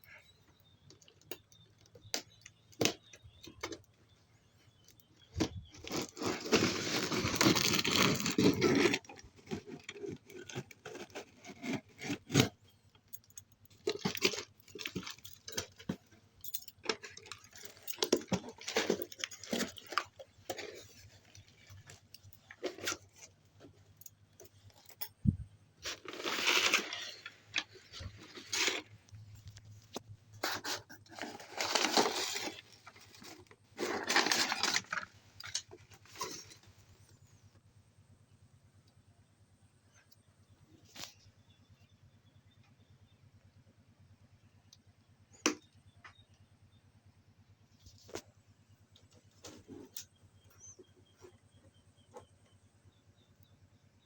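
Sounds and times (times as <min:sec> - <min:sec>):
wrapping tearing and crinkling: 0:05.8 - 0:12.5, 0:13.8 - 0:16.0, 0:25.8 - 0:28.9, 0:30.6 - 0:36.6.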